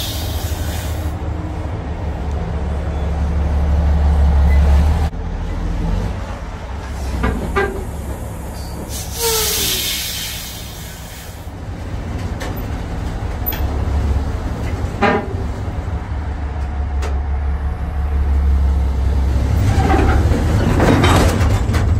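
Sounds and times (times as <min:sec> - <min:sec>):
burst of hiss: 0:00.0 - 0:01.1, 0:08.9 - 0:11.5.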